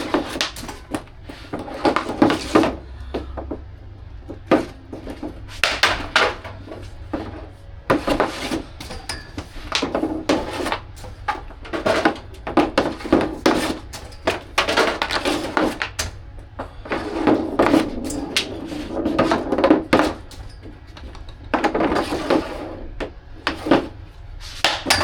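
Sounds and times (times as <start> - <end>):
skate blades scraping ice: 0.0 - 2.8, 4.5 - 16.0, 16.8 - 20.4, 21.5 - 25.0
stick and puck knocking: 0.0 - 3.6, 4.2 - 7.3, 7.9 - 16.2, 24.6 - 25.0
steady low hum: 0.0 - 25.0.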